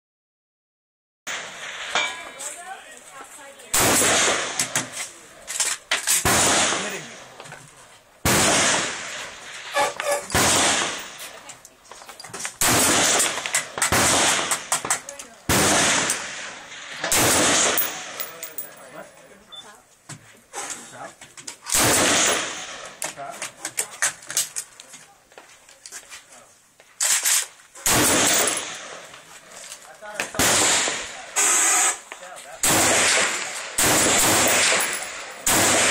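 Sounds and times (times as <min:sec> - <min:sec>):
loud gunshots: 0:03.7 - 0:04.9, 0:06.1 - 0:07.2, 0:08.2 - 0:11.2, 0:12.6 - 0:14.9, 0:15.5 - 0:18.3, 0:21.7 - 0:22.8, 0:27.8 - 0:29.0, 0:30.3 - 0:32.0, 0:32.6 - 0:35.9.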